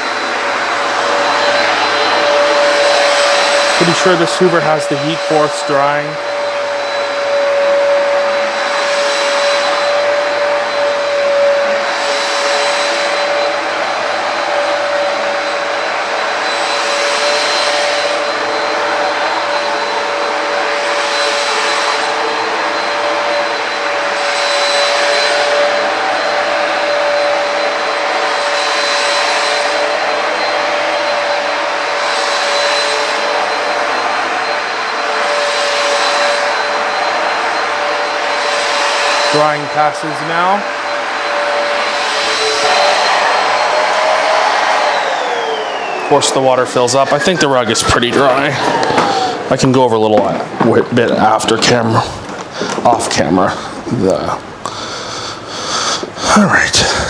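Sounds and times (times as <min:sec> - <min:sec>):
suction rushing hiss: 0:00.0 - 0:49.6
motor hum: 0:40.6 - 0:55.5.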